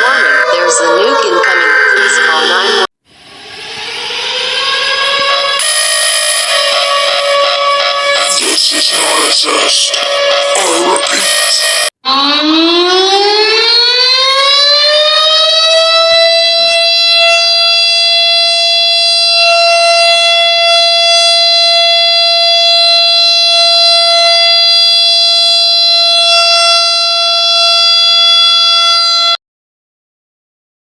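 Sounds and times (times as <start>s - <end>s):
warning siren wailing: 0.0s - 29.4s.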